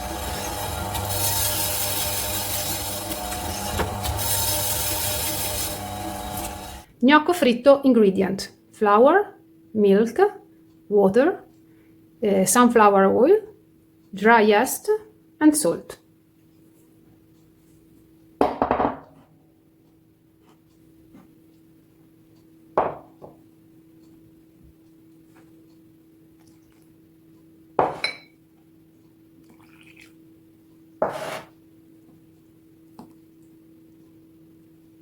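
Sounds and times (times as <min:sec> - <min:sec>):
kitchenware clattering: 0:27.8 - 0:28.4.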